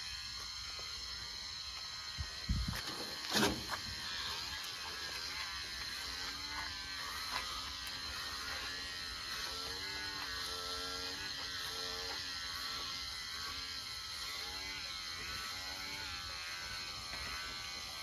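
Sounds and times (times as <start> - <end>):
electric clippers running: 0.0 - 18.0.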